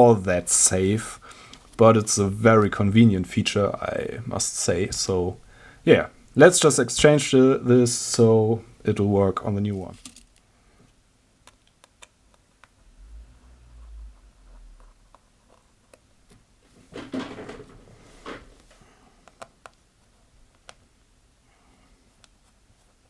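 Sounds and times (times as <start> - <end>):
rustle or scrape: 12.9 - 15.7.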